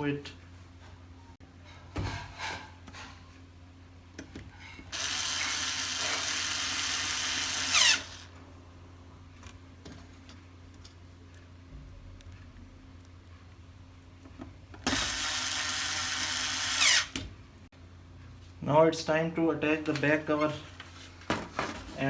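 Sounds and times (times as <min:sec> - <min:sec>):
electric screwdriver driving screw: 0:04.9 - 0:08.3, 0:14.8 - 0:17.2.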